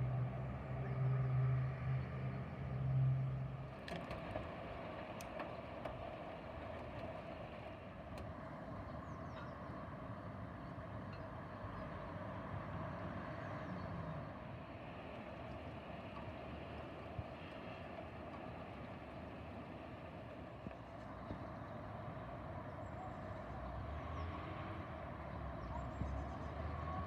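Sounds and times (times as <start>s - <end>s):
distant road traffic hum: 0.0s - 27.0s
faint clicks: 3.7s - 8.4s.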